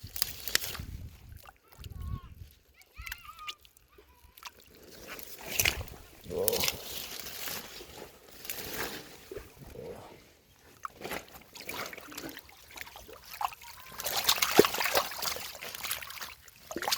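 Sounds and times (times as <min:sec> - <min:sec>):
hands splashing in shallow water: 0:02.9 - 0:07.8, 0:10.8 - 0:16.9.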